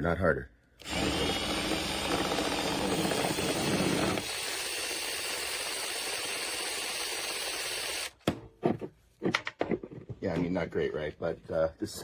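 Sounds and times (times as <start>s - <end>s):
burr grinder grinding: 0.8s - 8.2s
electric drill whirring: 0.8s - 8.2s.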